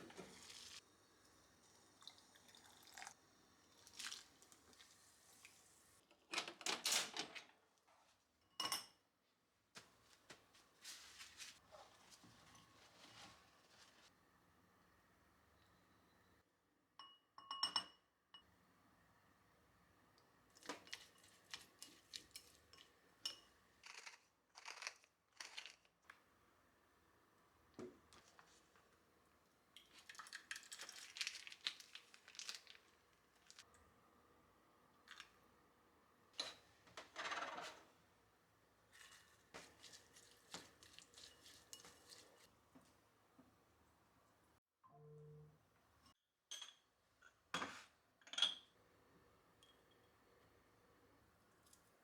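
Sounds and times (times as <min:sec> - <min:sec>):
dish or utensil clink: 0:17.0 - 0:18.0.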